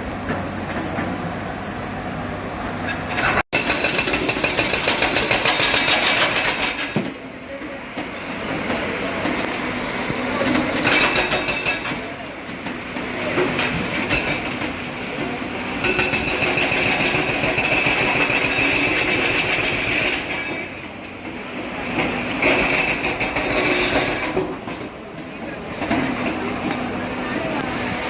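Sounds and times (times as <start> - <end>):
heavy machinery rattling: 2.9 - 28.0.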